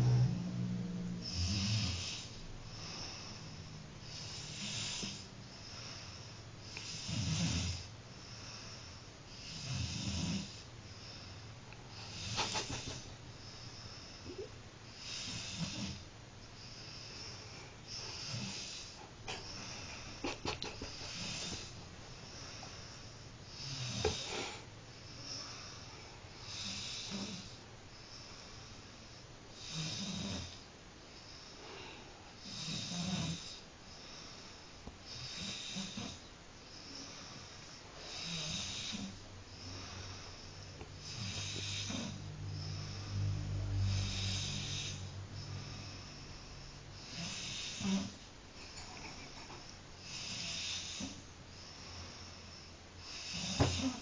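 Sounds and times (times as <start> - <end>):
person snoring heavily: 0.0 - 11.2, 11.9 - 13.1, 13.9 - 16.0, 16.7 - 27.6, 29.6 - 30.6, 31.7 - 34.2, 35.1 - 36.2, 38.0 - 51.2, 53.0 - 54.0.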